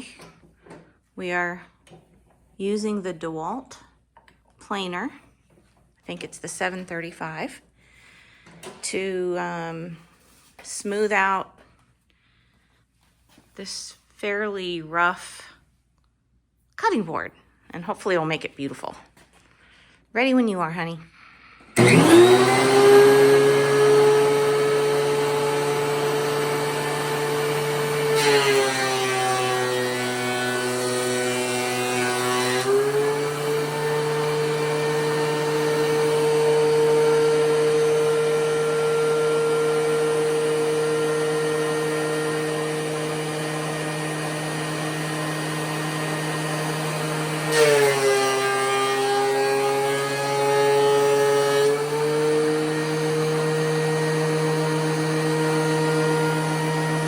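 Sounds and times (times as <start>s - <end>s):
thickness planer motor whine: 21.8s - 57.0s
wooden board being planed: 21.8s - 57.0s.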